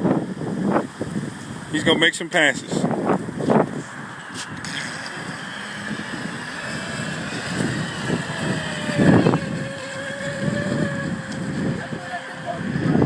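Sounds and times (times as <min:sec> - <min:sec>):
wind buffeting microphone: 0:00.0 - 0:13.0
distant electric motor whine: 0:03.1 - 0:13.0.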